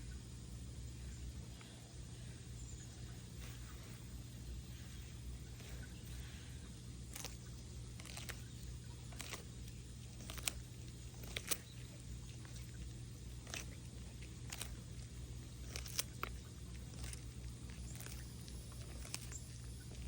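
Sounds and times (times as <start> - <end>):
low steady hum: 0.0 - 20.0
tortoise crunching food: 0.0 - 20.0.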